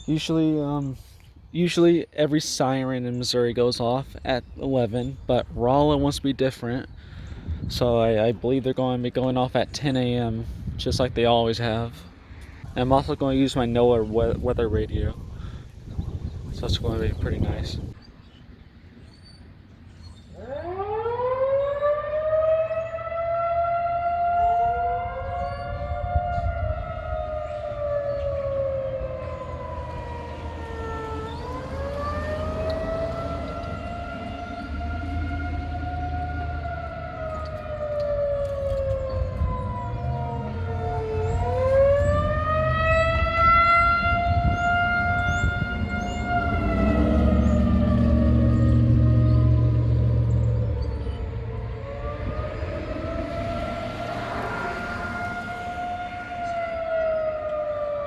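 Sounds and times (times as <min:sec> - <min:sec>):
second lower siren: 0:20.2 - 0:58.0
tornado warning siren wailing: 0:20.2 - 0:58.0.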